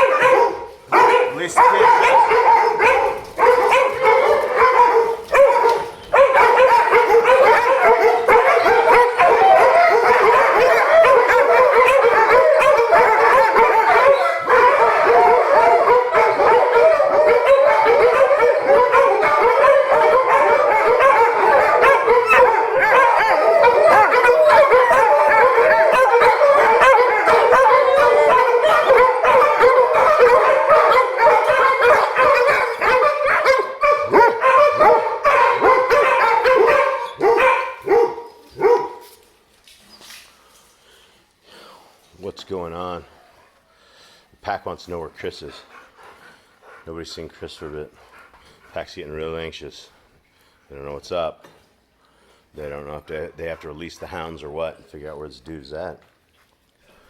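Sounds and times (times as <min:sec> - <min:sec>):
dogs howling and yipping: 0:00.0 - 0:39.0.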